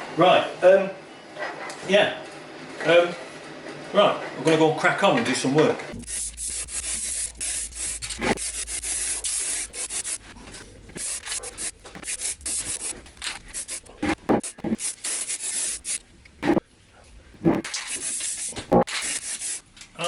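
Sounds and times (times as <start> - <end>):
sanding plastic scraping strokes: 6.0 - 16.6, 17.6 - 19.6.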